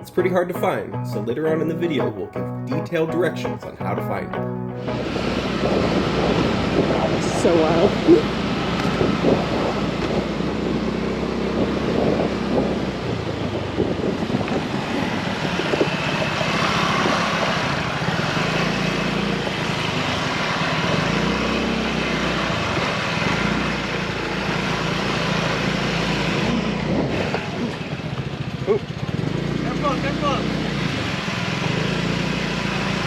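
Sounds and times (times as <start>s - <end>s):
motorbike engine running: 4.5s - 33.0s
wind buffeting microphone: 4.8s - 29.7s.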